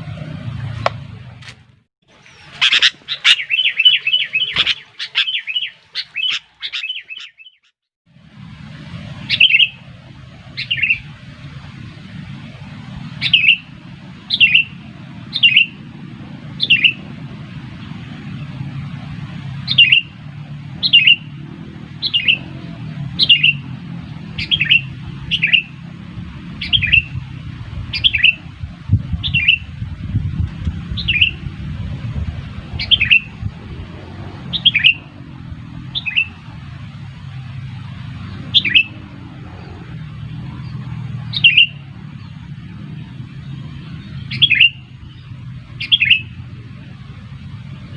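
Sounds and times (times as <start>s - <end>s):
bird giving sharp call notes: 2.2s - 7.7s, 13.2s - 13.7s, 19.7s - 20.2s, 20.8s - 21.3s, 22.0s - 23.7s
steady low rumble: 8.1s - 47.9s.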